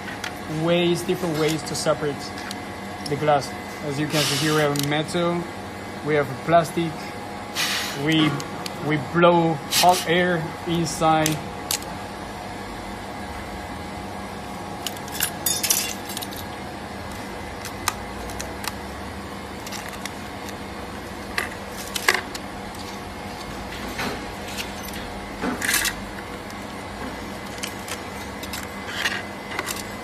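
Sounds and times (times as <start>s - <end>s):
steady machine hum: 0.0s - 30.0s
pry tools clicking and scraping glass: 14.9s - 16.5s.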